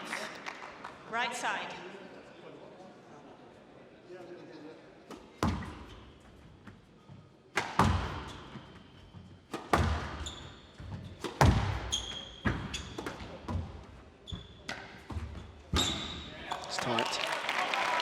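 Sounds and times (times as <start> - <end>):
shoes squeaking on court floor: 5.0 - 16.4
squash ball struck by rackets: 7.5 - 8.4, 9.5 - 13.7, 14.6 - 16.0.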